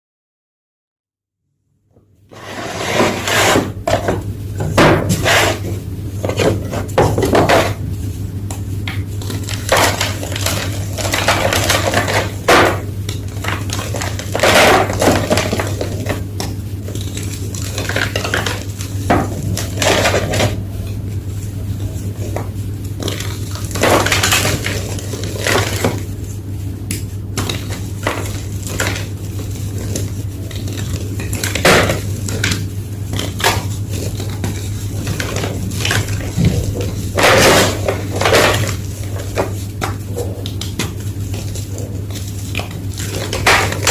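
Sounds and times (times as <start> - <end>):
steady low hum: 1.9 - 43.9
chalk blocks crunching: 2.3 - 4.2.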